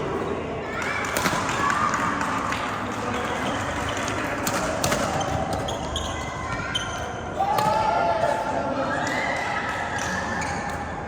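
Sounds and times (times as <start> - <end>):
rackets smacking shuttlecock: 1.0 - 2.1
shoes squeaking on court: 4.8 - 7.3.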